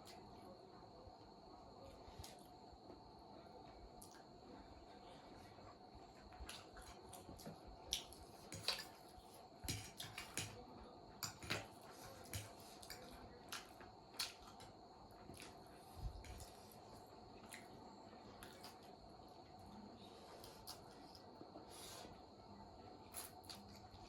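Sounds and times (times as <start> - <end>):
chewing with wet smacks: 17.4 - 17.8.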